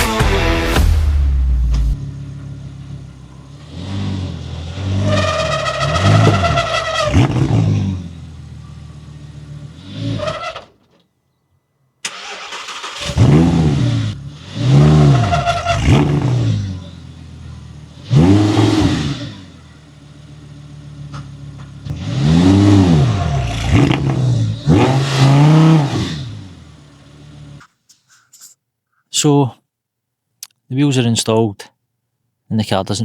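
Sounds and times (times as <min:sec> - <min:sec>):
car engine revving: 0:00.0 - 0:10.8, 0:12.0 - 0:27.7.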